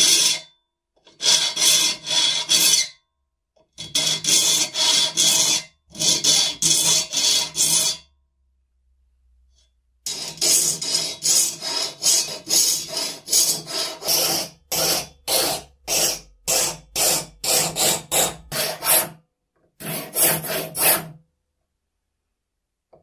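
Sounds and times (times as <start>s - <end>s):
hand file strokes: 10.1s - 19.2s, 19.8s - 21.2s.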